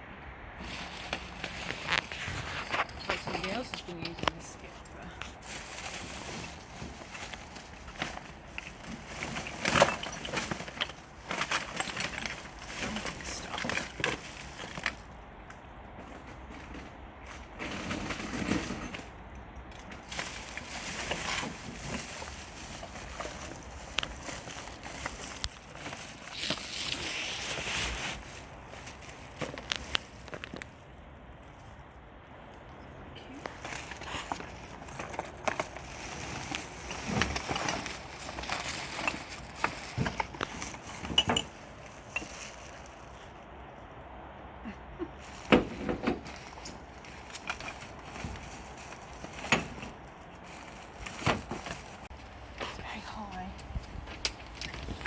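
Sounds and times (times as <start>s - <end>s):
rubbish rustling and scraping: 0.6s - 15.2s, 15.9s - 31.8s, 33.2s - 43.5s, 45.0s - 55.0s
debris clattering and knocking: 5.2s - 15.1s, 33.4s - 42.8s.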